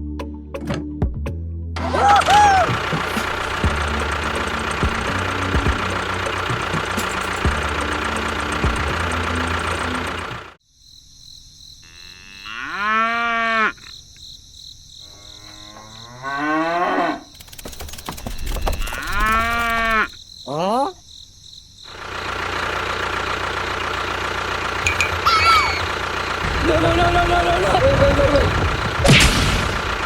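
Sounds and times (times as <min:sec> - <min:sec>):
small engine running rough: 0:01.8 - 0:10.6, 0:17.3 - 0:20.1, 0:21.9 - 0:30.0
cow mooing: 0:11.8 - 0:13.9, 0:15.0 - 0:17.3, 0:18.8 - 0:20.1.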